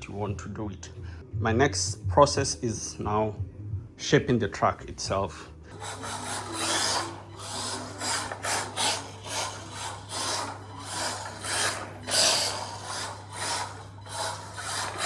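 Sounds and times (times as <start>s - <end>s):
steady low hum: 0.0s - 15.0s
scraping strokes: 5.7s - 15.0s.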